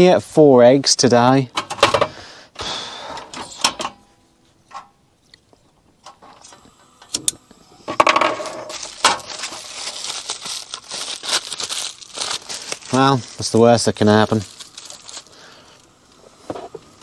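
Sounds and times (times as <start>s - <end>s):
tin foil crinkling: 8.4s - 17.0s.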